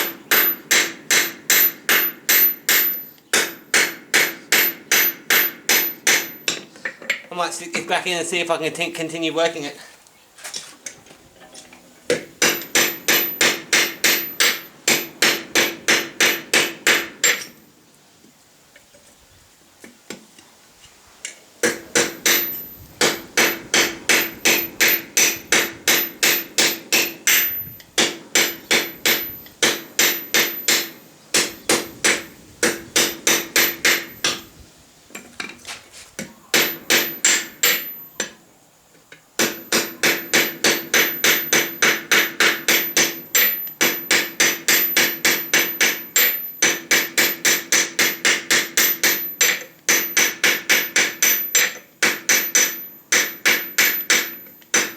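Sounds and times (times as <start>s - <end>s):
hammer striking hot steel on anvil: 0.0s - 6.7s, 12.1s - 17.6s, 21.6s - 34.5s, 36.6s - 38.4s, 39.4s - 54.9s.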